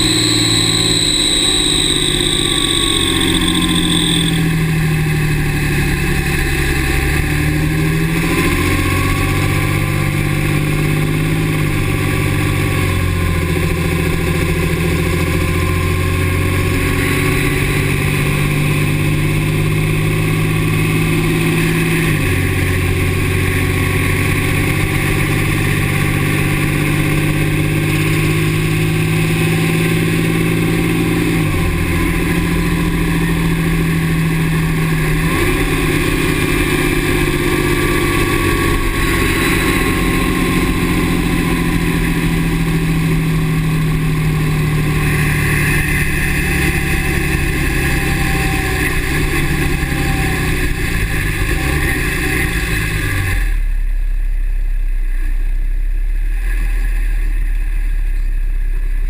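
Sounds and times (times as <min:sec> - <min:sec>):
faint thin whine: 0:00.0 - 0:04.7
diesel engine revving: 0:00.0 - 0:59.0.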